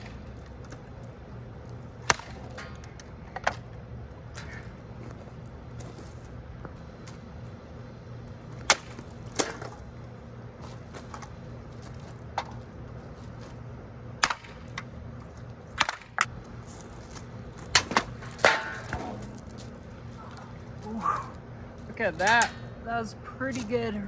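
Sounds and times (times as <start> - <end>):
axe striking targets: 2.0 - 3.6, 8.6 - 9.8, 14.2 - 14.9, 15.8 - 16.3, 17.7 - 19.6.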